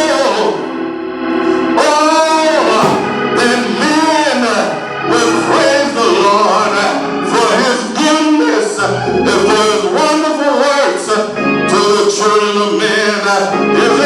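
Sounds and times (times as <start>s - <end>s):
person singing gospel: 1.6s - 14.0s
instrumental accompaniment: 2.7s - 4.0s.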